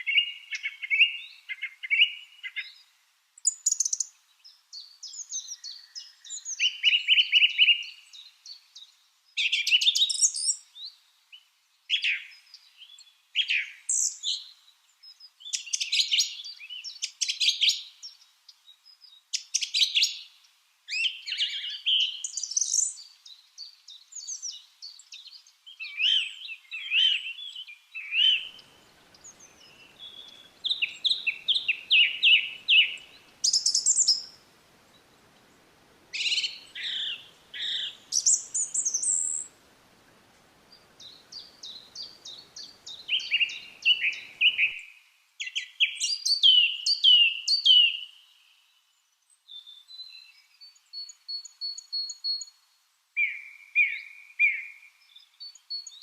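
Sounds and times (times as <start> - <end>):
lovebirds chirping: 20.9 - 48.3.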